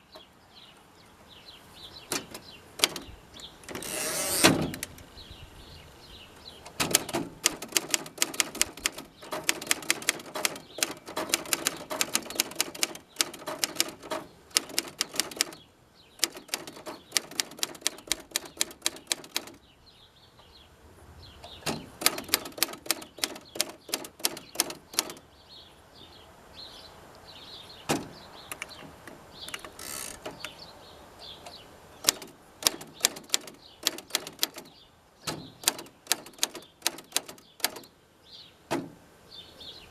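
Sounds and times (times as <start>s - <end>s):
manual typewriter typing: 2.1s - 3.1s, 6.7s - 15.6s, 16.2s - 19.6s, 21.7s - 25.2s, 28.5s - 30.5s, 32.0s - 34.7s, 35.4s - 37.9s.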